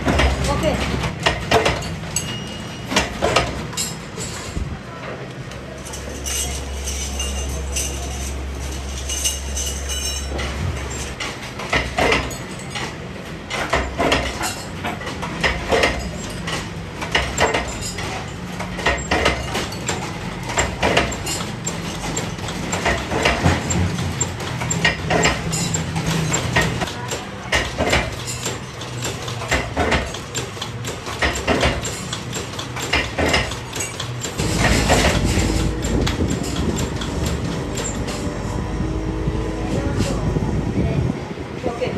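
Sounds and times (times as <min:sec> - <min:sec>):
metal parts knocking and clinking: 0:00.0 - 0:04.6, 0:05.5 - 0:38.5
steady low hum: 0:34.4 - 0:41.4.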